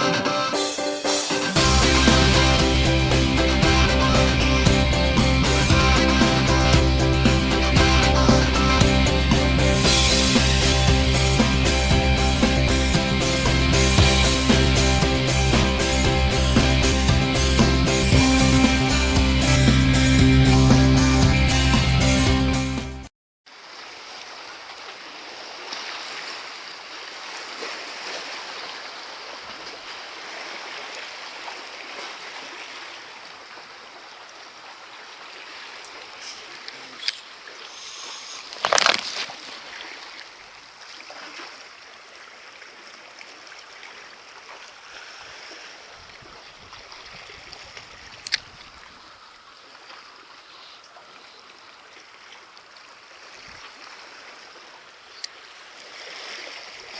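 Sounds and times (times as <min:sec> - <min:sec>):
sea water lapping against breakwater: 0:23.5 - 0:56.9.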